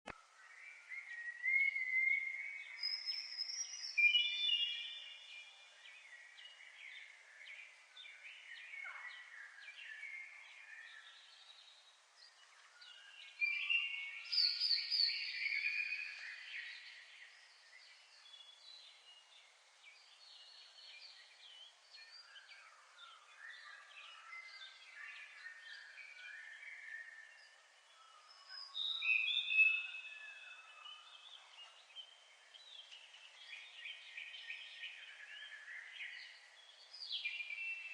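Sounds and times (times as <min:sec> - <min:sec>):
small birds chirping and singing: 0:00.1 - 0:37.9.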